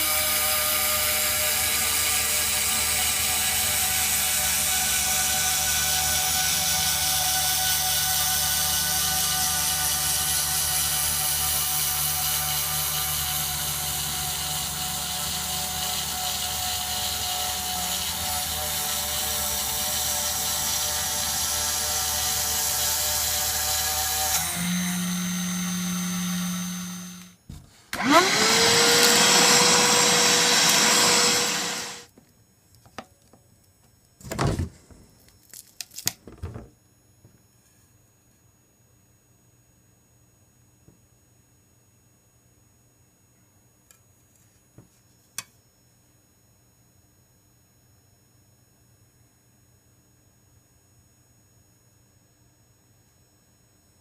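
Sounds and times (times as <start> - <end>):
milling spindle whine: 28.0 - 32.1
motor rising whine: 28.0 - 32.1.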